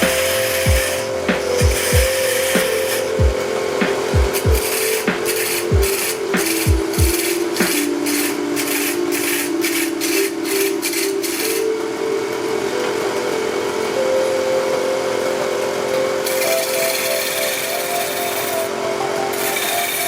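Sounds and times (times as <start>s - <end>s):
wood lathe running: 0.0s - 11.7s, 16.3s - 18.8s.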